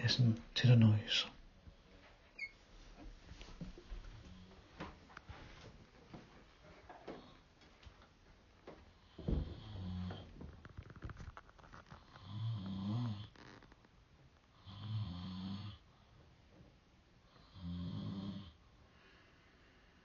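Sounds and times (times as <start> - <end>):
man snoring: 9.0 - 10.2, 12.1 - 13.3, 14.6 - 15.8, 17.4 - 18.6.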